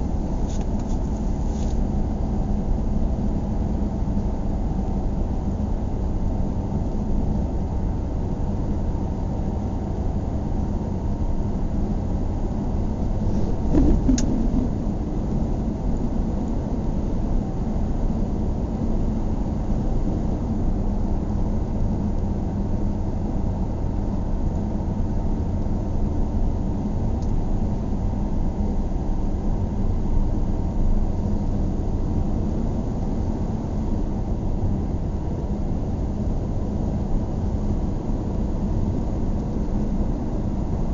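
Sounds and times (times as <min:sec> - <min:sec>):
car cabin engine and road rumble: 0:00.0 - 0:07.8, 0:08.5 - 0:21.6.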